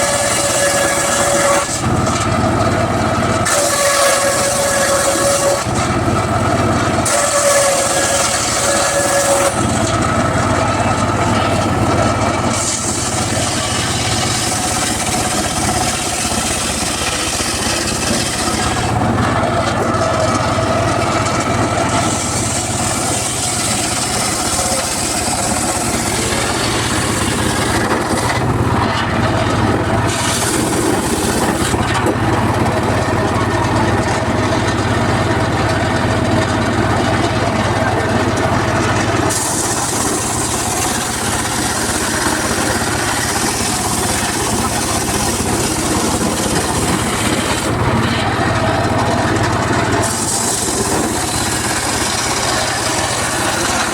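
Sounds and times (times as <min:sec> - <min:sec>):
circular saw cutting wood: 0:00.0 - 0:53.9.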